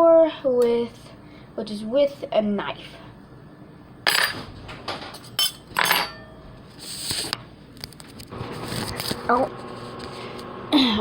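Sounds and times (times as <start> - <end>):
metal cutlery clinking: 4.1 - 4.4, 5.1 - 6.3.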